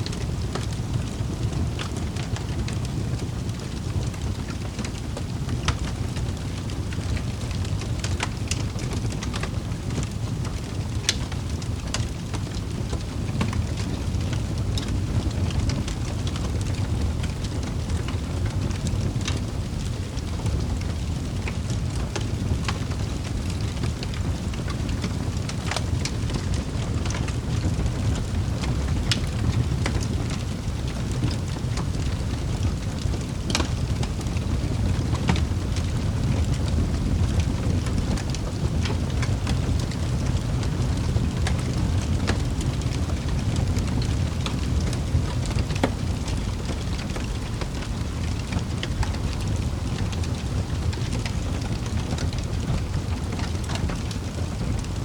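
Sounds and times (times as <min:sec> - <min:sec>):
rumble of flames: 0:00.0 - 0:55.0
wood fire crackling: 0:00.0 - 0:55.0.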